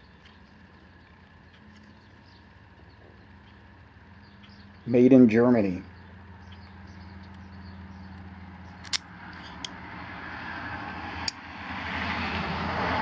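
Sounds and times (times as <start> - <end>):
steady low hum: 0.0 - 11.9
pliers clicking: 8.8 - 9.7.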